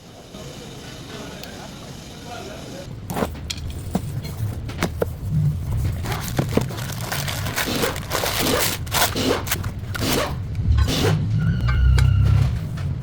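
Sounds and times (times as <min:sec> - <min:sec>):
steady low hum: 0:00.0 - 0:13.0
tools clicking and scraping: 0:05.8 - 0:12.1.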